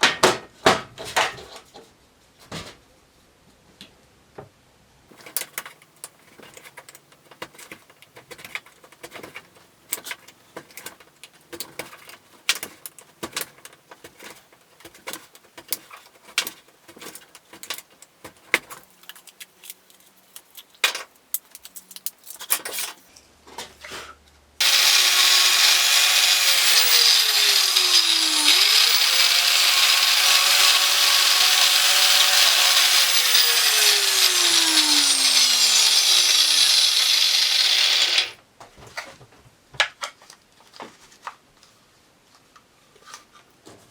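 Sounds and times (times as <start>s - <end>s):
small electric motor whining: 24.6s - 38.4s.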